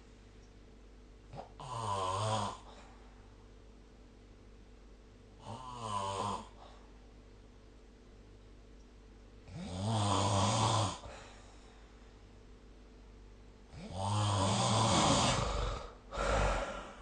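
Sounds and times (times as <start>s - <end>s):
faint steady hum: 0.0s - 17.0s
person snoring: 1.3s - 2.9s, 5.4s - 6.8s, 9.5s - 11.4s, 13.7s - 17.0s.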